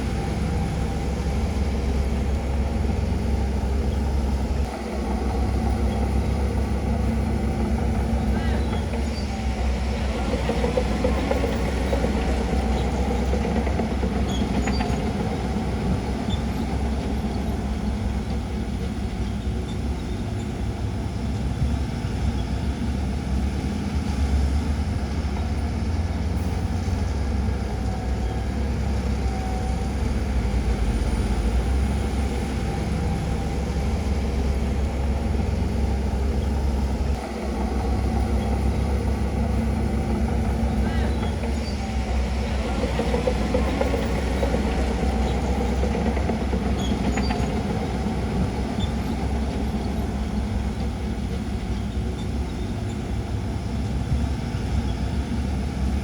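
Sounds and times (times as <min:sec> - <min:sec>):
heavy diesel engines rumbling: 0:00.0 - 0:56.0.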